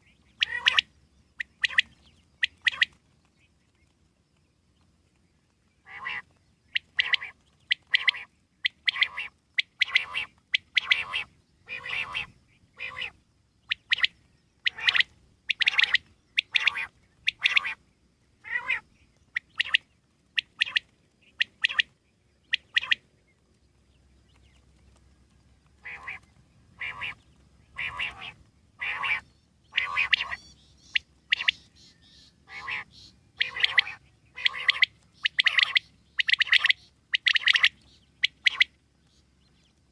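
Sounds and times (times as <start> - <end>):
quail calling: 0.4 - 3.0, 5.8 - 17.8, 18.4 - 23.0, 25.7 - 38.8.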